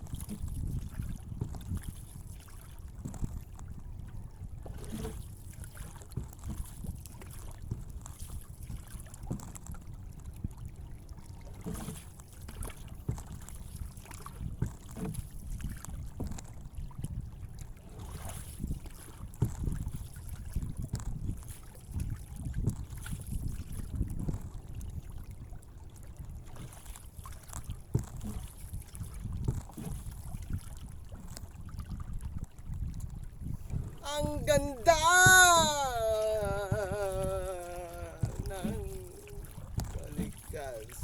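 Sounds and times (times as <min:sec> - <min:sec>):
water lapping: 0:00.0 - 0:41.0
wind rumbling on microphone: 0:00.0 - 0:41.0
small splashes: 0:33.9 - 0:41.0.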